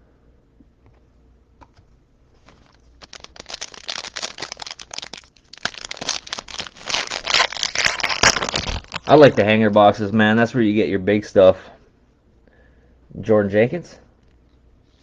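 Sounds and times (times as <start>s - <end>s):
wrapper crinkling and tearing: 2.4s - 9.5s.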